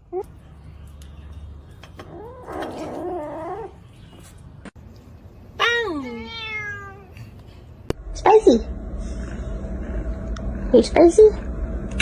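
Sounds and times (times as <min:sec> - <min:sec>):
pet whining: 0:02.0 - 0:04.2.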